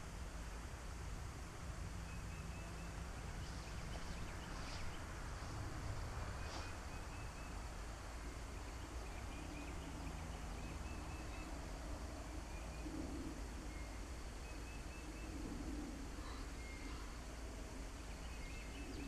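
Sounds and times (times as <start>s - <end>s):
low background noise: 0.0s - 19.0s
distant high-pitched calls: 16.1s - 17.2s.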